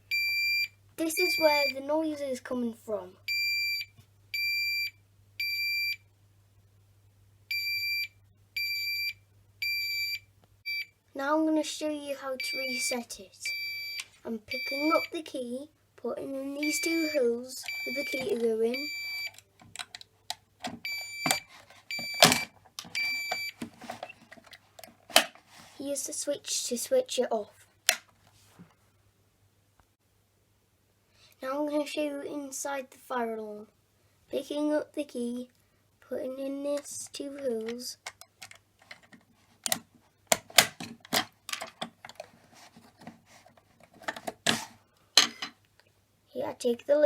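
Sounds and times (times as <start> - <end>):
high-pitched alarm beeps: 0.1 - 1.8, 3.3 - 6.0, 12.4 - 15.1, 16.6 - 19.4, 20.8 - 23.6.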